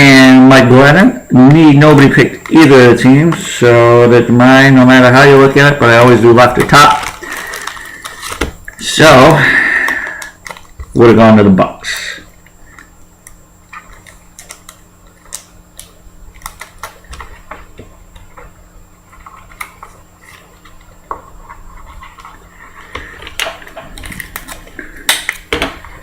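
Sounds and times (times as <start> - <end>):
faint steady hum: 0.0 - 26.0.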